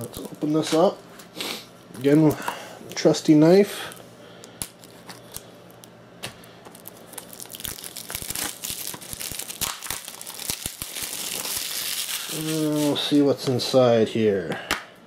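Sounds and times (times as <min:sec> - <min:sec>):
shrink wrap crinkling and tearing: 0:01.8 - 0:13.2.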